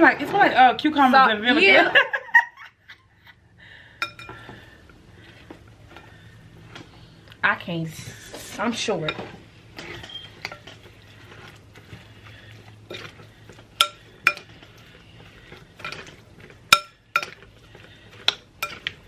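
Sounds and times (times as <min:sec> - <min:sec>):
spoon tossing salad in bowl: 0:04.0 - 0:19.0
spoon clinking against bowl: 0:13.8 - 0:14.5.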